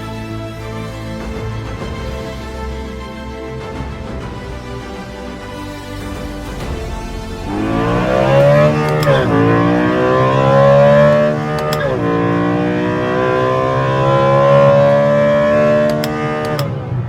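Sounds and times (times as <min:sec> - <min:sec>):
engine accelerating with induction noise: 0:07.5 - 0:17.0.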